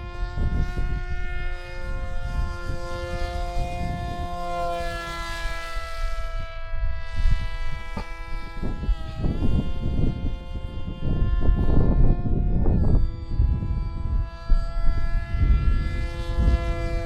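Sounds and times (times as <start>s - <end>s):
model jet electric motor whining: 0.0s - 17.0s
wind buffeting microphone: 0.0s - 17.0s.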